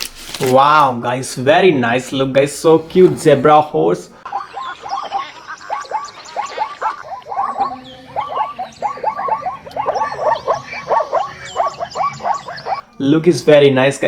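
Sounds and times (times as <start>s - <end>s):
animal croaking calls: 4.1s - 12.9s
faint high chirps: 4.2s - 13.0s.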